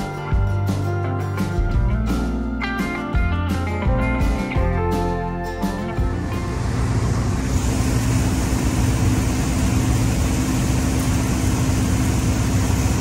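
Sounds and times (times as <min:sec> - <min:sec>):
combine harvester engine drone: 0:05.8 - 0:13.0.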